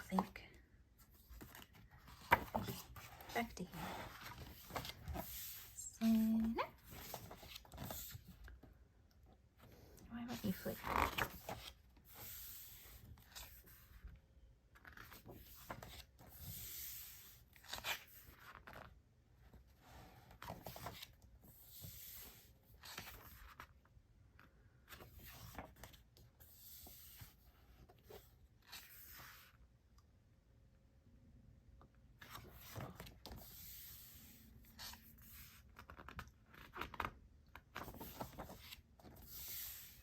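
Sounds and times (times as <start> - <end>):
pages being turned: 1.1 - 5.8, 6.8 - 8.4, 10.3 - 13.9, 20.4 - 23.7, 37.7 - 40.0.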